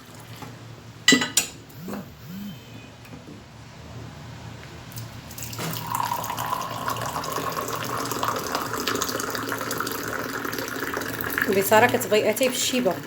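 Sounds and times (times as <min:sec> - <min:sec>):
tea pouring into a glass: 0:05.3 - 0:12.2.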